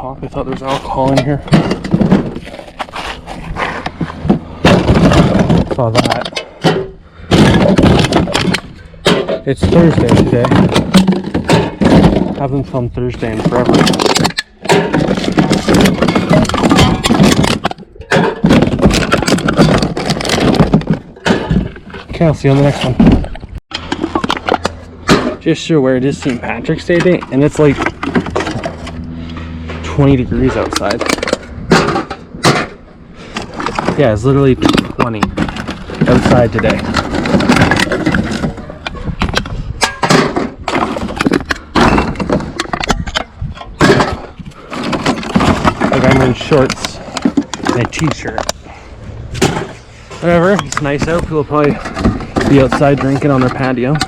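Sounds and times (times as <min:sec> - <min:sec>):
hard objects clattering: 0:00.0 - 0:54.0
rustling noise: 0:00.5 - 0:05.9.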